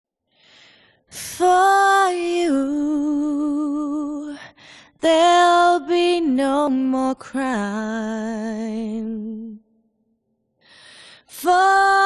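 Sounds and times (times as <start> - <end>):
woman singing a cappella: 1.1 - 9.8, 11.2 - 12.0.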